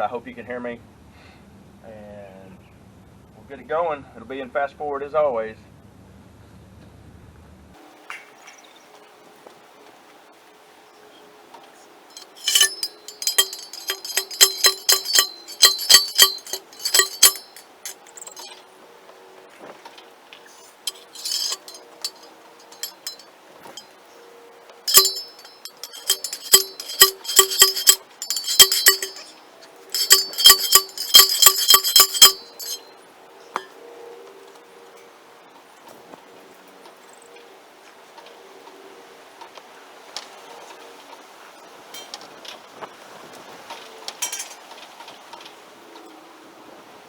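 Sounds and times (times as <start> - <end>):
rapid metallic clinks and taps: 12.1 - 18.5, 20.9 - 23.2, 24.9 - 32.9, 44.2 - 44.6.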